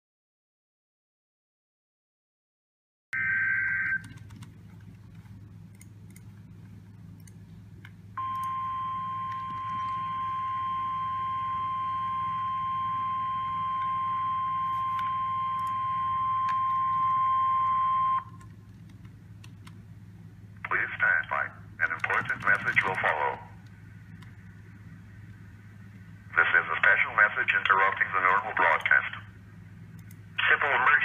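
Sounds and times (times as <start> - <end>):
steady warning alarm tone: 3.2 - 4.1, 8.2 - 18.4
radio hiss with low hum: 20.6 - 31.0.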